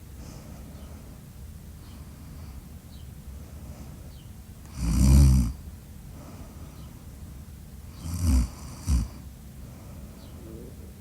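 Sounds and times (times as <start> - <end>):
snoring: 4.7 - 5.6, 7.9 - 9.2
person breathing heavily: 9.6 - 10.6.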